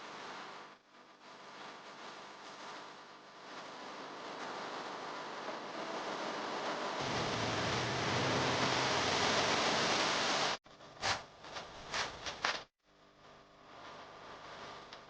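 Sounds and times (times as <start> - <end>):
steady rushing hiss: 6.0 - 10.6.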